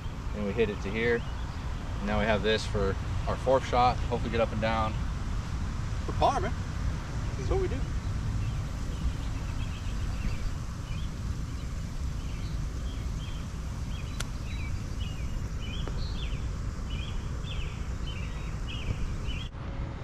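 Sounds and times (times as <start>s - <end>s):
birds chirping: 0.0s - 19.5s
wind rumble on microphone: 0.0s - 20.0s
sharp click: 14.1s - 14.4s.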